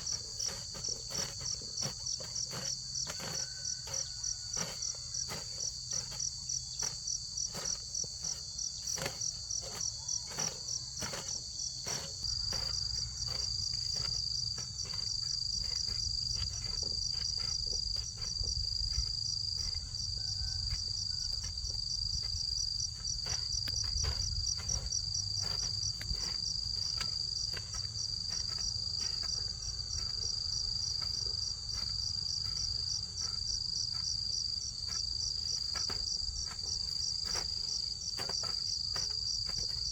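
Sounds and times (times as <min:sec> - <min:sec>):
insects chirping: 0:00.0 - 0:39.9.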